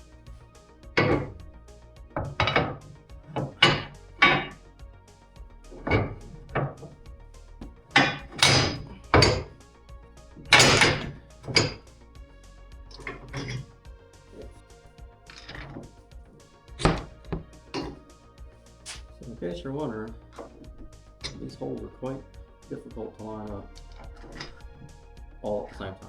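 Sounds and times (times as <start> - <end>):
scraping rattles: 0.0 - 1.5, 2.2 - 4.6, 5.7 - 9.6, 10.3 - 11.9, 12.9 - 25.0
background music: 0.0 - 26.0
tools and parts knocking: 1.0 - 1.4, 2.2 - 4.6, 5.7 - 7.0, 7.6 - 9.6, 10.4 - 11.8, 12.9 - 13.7, 15.3 - 18.0, 20.3 - 21.6, 23.8 - 24.8.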